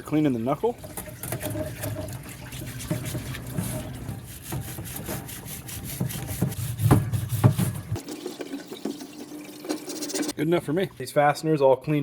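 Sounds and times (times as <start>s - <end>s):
brush scrubbing metal: 1.0s - 9.0s, 9.6s - 10.4s.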